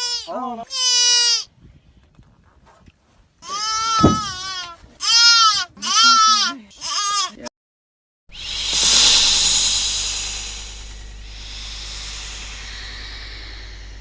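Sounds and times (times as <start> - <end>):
farm animal bleating: 0.0 - 1.5, 3.4 - 7.5.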